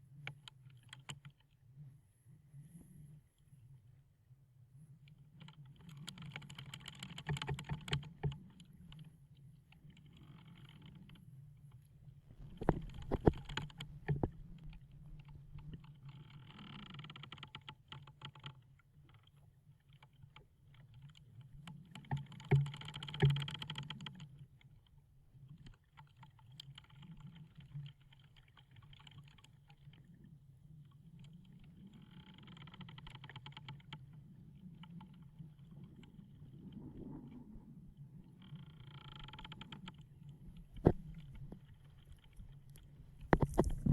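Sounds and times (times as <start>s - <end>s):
wooden hull creaking: 12.3s - 15.6s, 40.5s - 43.9s.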